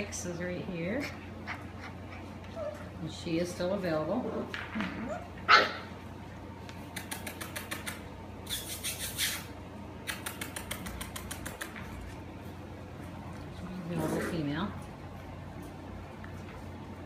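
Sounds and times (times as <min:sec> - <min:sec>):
puppy yelp: 0:05.0 - 0:05.9
paws clicking and scrabbling: 0:06.6 - 0:09.4, 0:10.0 - 0:17.0.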